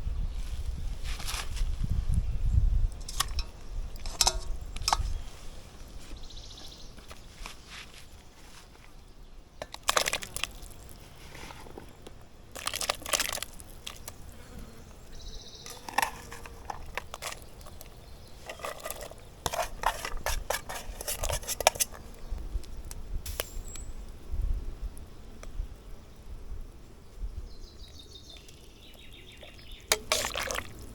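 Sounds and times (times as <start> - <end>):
clattering cooking gear: 3.0 - 5.1, 15.6 - 22.0, 29.4 - 30.8.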